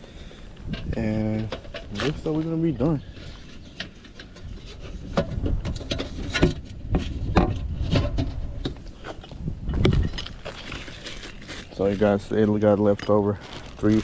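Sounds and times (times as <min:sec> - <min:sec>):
sheet metal clicks and scrapes: 0:00.6 - 0:02.4, 0:03.1 - 0:11.4.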